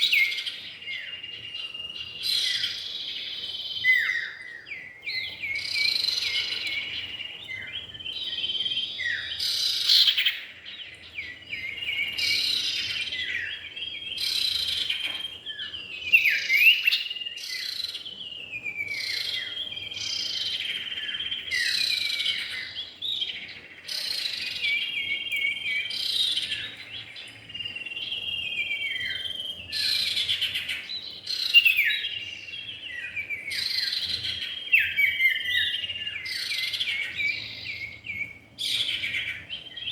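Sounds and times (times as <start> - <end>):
birds singing and calling: 0.0 - 39.9.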